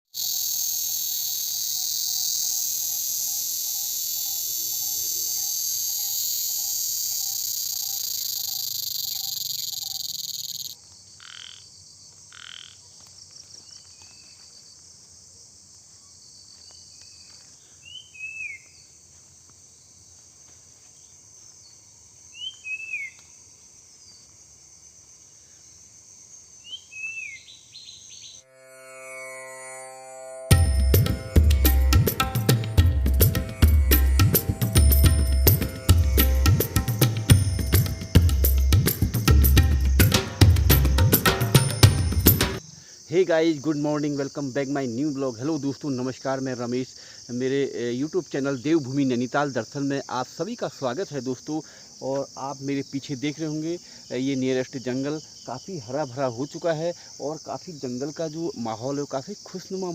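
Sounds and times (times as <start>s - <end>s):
crickets and insects chorus: 0.1s - 59.9s
forest ambience: 0.1s - 59.9s
frog croaking: 0.2s - 12.8s
bird chirping: 2.9s - 11.6s, 22.4s - 23.4s, 26.6s - 28.5s, 30.5s - 42.9s.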